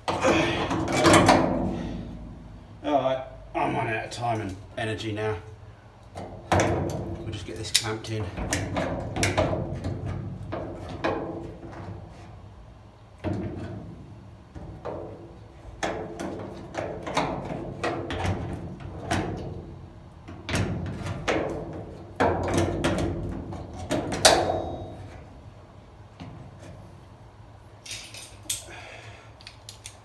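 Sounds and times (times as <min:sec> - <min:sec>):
metal panel and pliers clanking: 0:00.0 - 0:02.6, 0:20.5 - 0:25.3.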